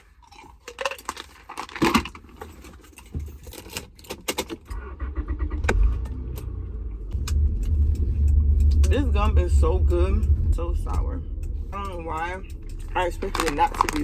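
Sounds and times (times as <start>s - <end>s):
car engine rumbling: 1.2s - 14.0s
keys jangling: 2.3s - 4.7s.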